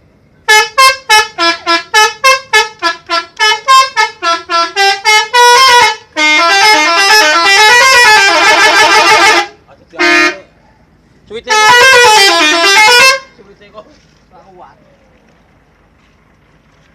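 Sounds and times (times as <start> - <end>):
multi-tone bus air horn tune: 0.4 - 10.5, 11.4 - 13.4.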